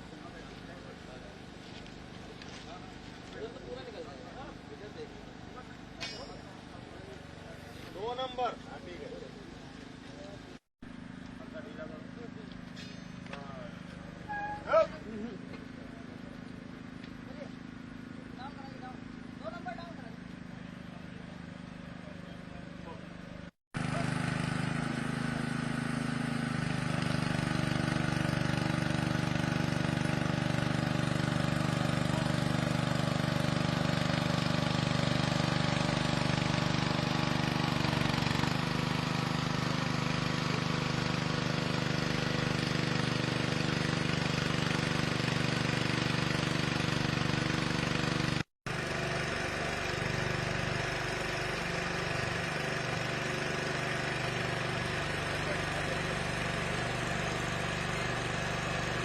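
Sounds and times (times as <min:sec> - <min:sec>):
heavy engine idling: 0:13.3 - 0:59.0.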